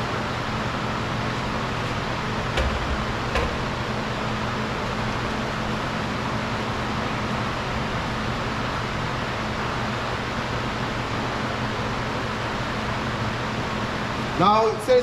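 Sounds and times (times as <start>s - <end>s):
steady machine hum: 0.0s - 15.0s.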